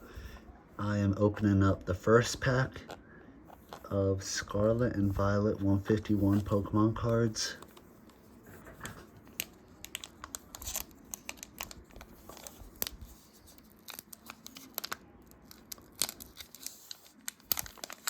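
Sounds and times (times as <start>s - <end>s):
foil wrapper crinkling and tearing: 9.3s - 18.0s.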